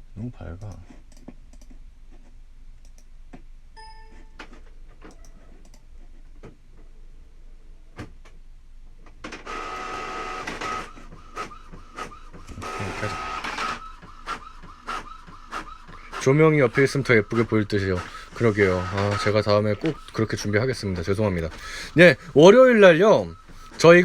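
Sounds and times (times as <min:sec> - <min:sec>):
short beep: 0:03.8 - 0:04.4
printer clicks: 0:09.2 - 0:24.0
print mechanism whirring: 0:09.3 - 0:24.0.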